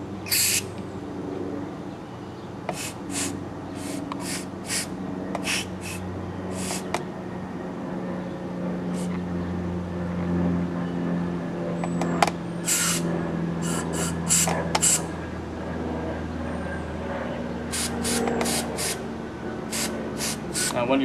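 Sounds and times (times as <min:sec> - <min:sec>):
low hum: 0:00.0 - 0:21.0
aerosol spray hissing: 0:00.3 - 0:00.6, 0:02.7 - 0:06.0, 0:06.6 - 0:06.9, 0:12.7 - 0:13.0, 0:13.6 - 0:15.0, 0:17.8 - 0:19.0, 0:19.7 - 0:20.8.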